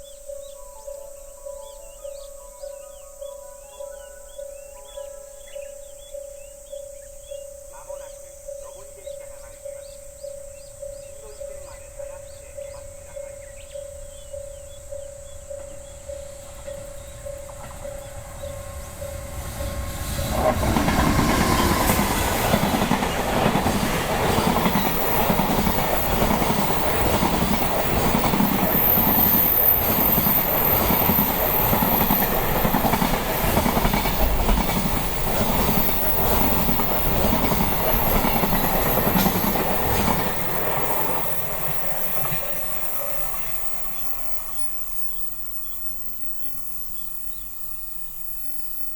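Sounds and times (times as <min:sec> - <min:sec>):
level-crossing bell ringing: 0:08.5 - 0:20.3, 0:21.1 - 0:48.9
train wheels clickety-clack: 0:12.2 - 0:48.4.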